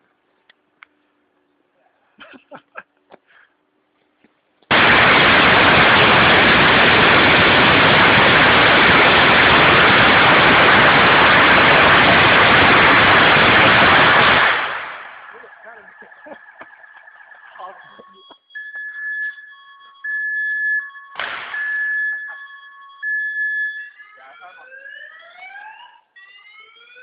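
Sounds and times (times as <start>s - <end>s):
firecrackers crackling: 4.7s - 18.2s, 21.2s - 21.8s.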